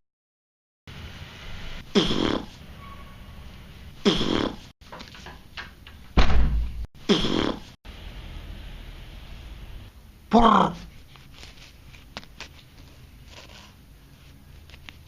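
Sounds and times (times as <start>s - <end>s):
fart noises: 1.9s - 2.6s, 4.0s - 4.7s, 7.0s - 7.8s.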